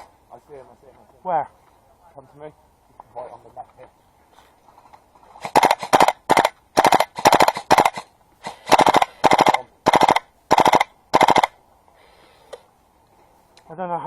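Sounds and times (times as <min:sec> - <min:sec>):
airsoft gun firing bursts: 0:05.4 - 0:11.6.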